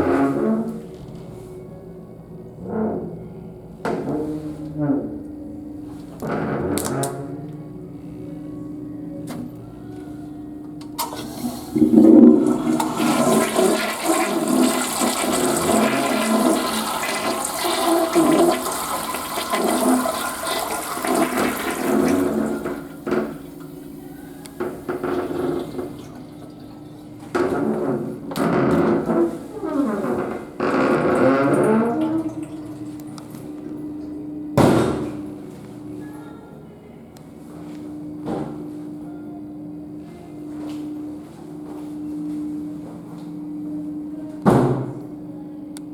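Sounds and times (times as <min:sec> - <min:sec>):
toilet refilling with water: 0:11.0 - 0:34.2
toilet flushing: 0:11.0 - 0:35.4.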